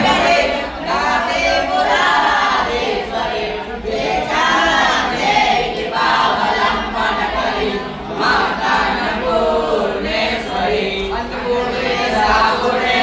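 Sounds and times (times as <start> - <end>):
group of voices chanting: 0.0 - 13.0.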